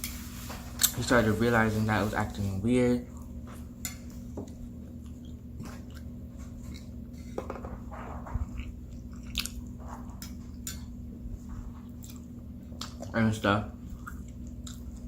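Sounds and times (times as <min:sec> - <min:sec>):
person chewing food: 0:03.1 - 0:07.4, 0:08.4 - 0:13.2, 0:13.8 - 0:15.0.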